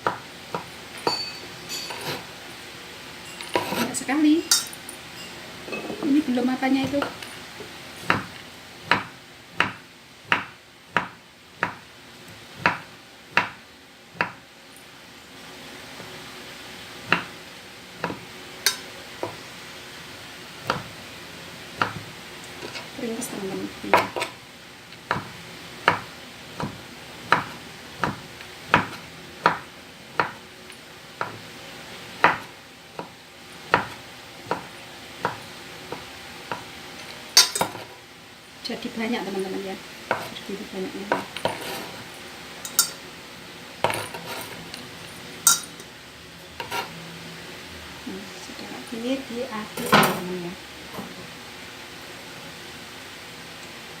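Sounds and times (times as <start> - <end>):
knife chopping on cutting board: 8.0 - 11.9, 12.6 - 13.6, 14.2 - 14.4, 17.0 - 17.3, 18.0 - 18.2, 20.6 - 21.0, 21.8 - 22.8, 25.1 - 30.4, 31.2 - 31.4, 32.2 - 36.7.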